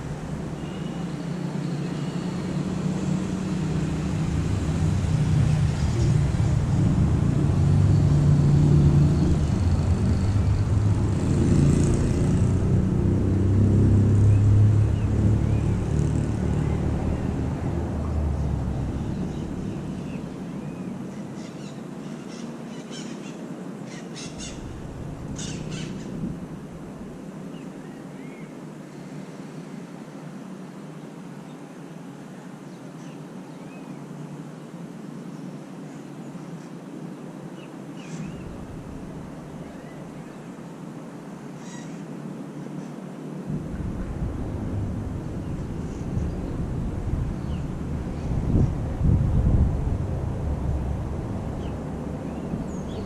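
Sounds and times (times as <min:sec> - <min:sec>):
vehicle passing: 0:00.0 - 0:21.1, 0:43.5 - 0:53.0
bird calling: 0:19.0 - 0:26.2, 0:41.6 - 0:42.1.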